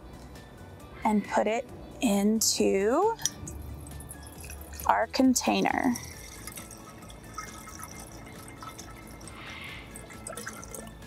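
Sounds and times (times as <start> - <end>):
liquid dripping and trickling: 3.0 - 11.0
soft pouring hiss: 5.8 - 11.0.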